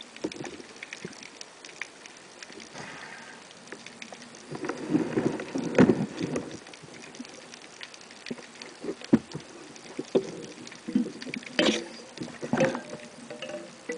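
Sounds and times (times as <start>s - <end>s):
muffled rustle: 2.5s - 11.5s.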